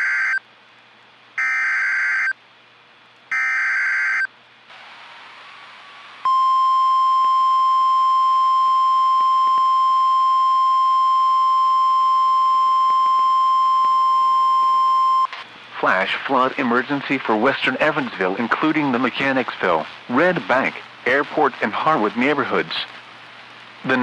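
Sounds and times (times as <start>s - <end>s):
faint radio hiss: 4.3s - 10.3s, 15.3s - 24.0s
steady alarm tone: 6.2s - 15.3s.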